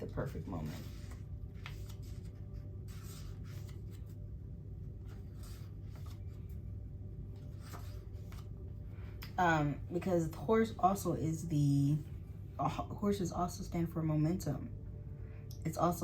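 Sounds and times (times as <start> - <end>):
cards rustling: 0.0 - 4.2, 5.0 - 6.6, 7.4 - 8.6
steady low hum: 0.0 - 16.0.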